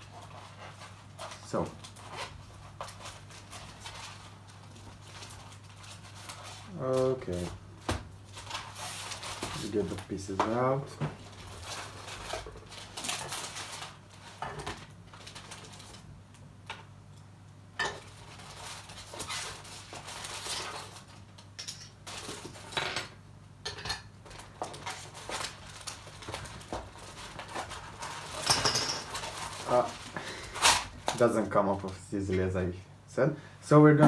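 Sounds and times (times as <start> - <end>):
packaging rustling: 8.2 - 16.0, 24.4 - 32.0.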